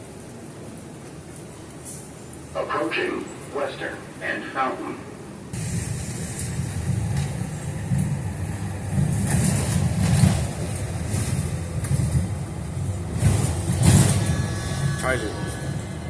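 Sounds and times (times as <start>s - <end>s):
bus rumbling: 0.0s - 16.0s
rattles and knocks: 8.8s - 15.0s.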